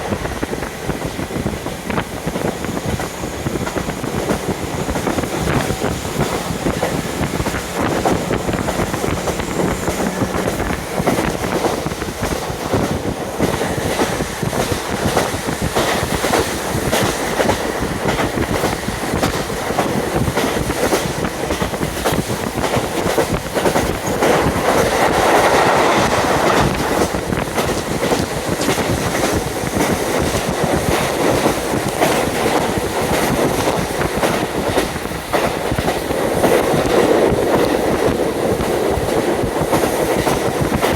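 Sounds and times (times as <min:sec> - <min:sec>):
wind rushing: 0:00.0 - 0:35.2
diesel railcar running: 0:00.0 - 0:40.9
wheels clicking over rail joints: 0:00.0 - 0:40.9.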